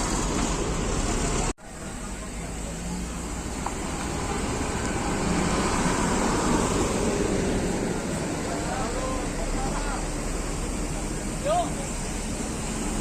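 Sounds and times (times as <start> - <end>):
bus engines and road traffic: 0.0 - 13.0.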